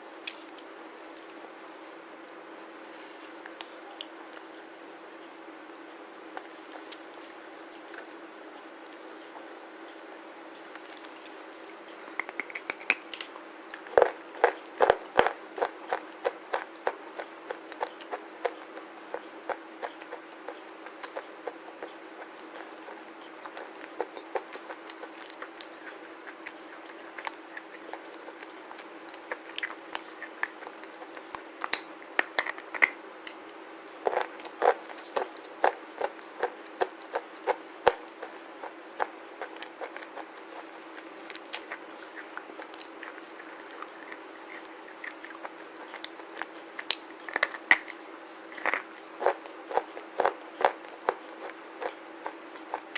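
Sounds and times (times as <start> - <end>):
brittle crunches of chewing: 10.8 - 52.9.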